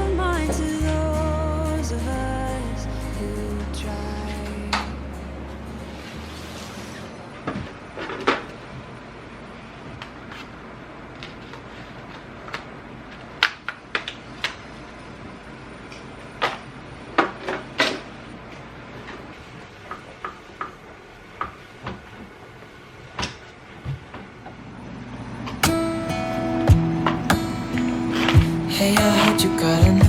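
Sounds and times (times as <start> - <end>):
music: 0.0 - 6.8, 25.6 - 30.0.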